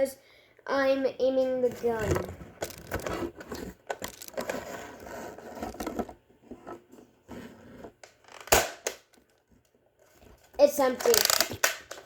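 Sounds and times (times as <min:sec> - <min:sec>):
toy blaster scraping and rattling: 0:01.8 - 0:05.9, 0:10.8 - 0:11.8.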